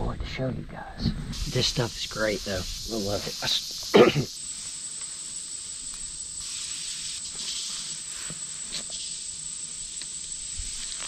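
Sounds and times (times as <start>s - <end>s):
insects singing: 0.8s - 11.0s
faint ticks: 9.9s - 11.0s.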